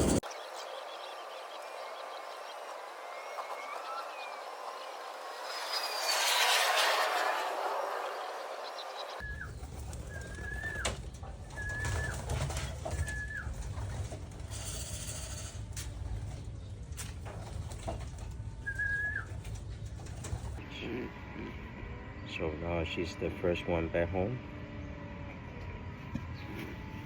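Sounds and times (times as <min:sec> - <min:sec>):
pigeons calling: 0:00.0 - 0:00.3, 0:02.7 - 0:22.9.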